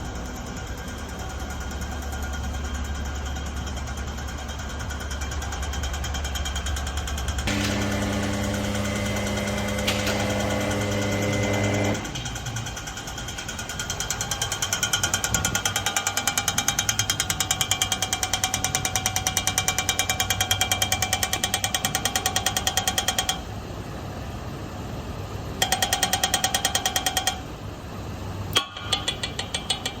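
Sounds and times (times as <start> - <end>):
rapid engine knocking: 3.7 - 23.3.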